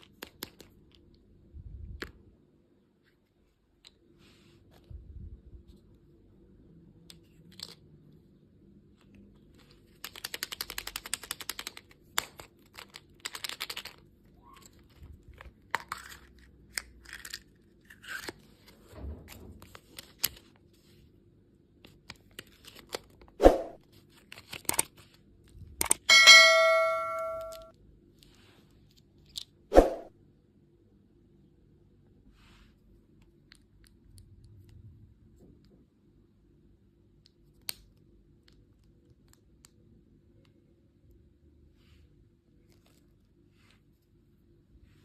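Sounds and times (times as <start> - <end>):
wrapper clicks and crinkles: 14.6 - 18.6
candy packaging ripping: 15.8 - 18.4
small hard object ringing ding: 26.1 - 27.7.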